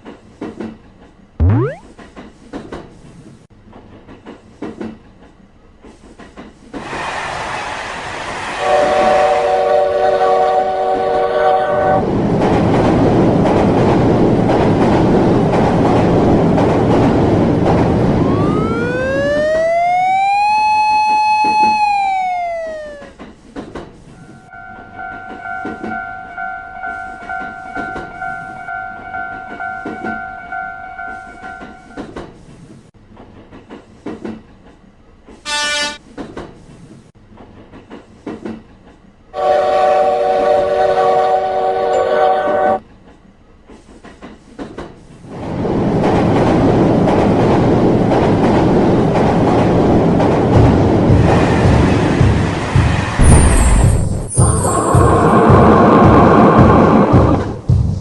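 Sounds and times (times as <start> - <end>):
steady tone: 1.4 - 1.9, 18.1 - 23.1
train rumbling past: 3.6 - 35.3, 36.8 - 58.0
train horn: 8.6 - 12.0, 35.4 - 36.0, 39.4 - 42.8.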